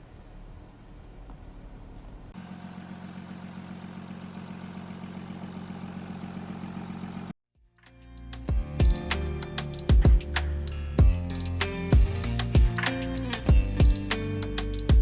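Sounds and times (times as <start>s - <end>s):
diesel engine idling: 0.0s - 7.4s
music: 7.6s - 15.0s.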